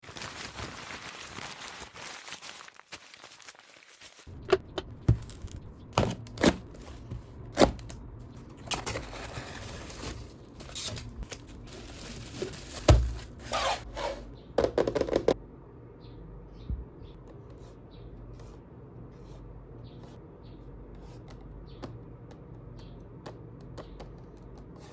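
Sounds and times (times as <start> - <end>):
packaging tearing and crinkling: 0.0 - 4.3, 8.6 - 13.6.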